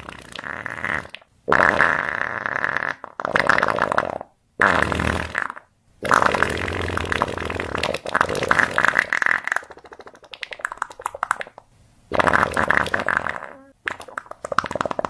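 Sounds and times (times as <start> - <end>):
farts: 0.0 - 15.0.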